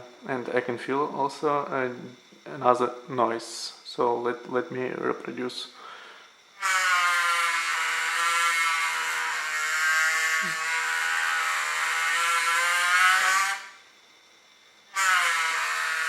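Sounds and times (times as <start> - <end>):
gimbal motors buzzing: 6.6 - 13.8, 15.0 - 16.0.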